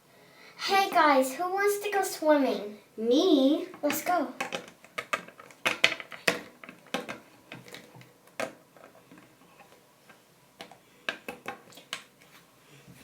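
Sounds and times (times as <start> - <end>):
plastic toys clicking on hard surface: 3.8 - 9.3.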